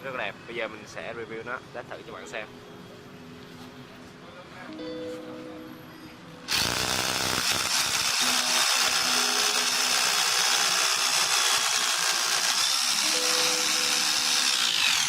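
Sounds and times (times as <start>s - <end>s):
rotary hammer drill running: 6.5s - 15.0s.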